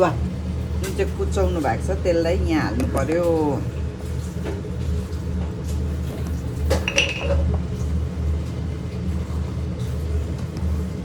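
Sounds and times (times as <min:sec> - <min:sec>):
utensil clinking on pan: 0:06.7 - 0:07.5.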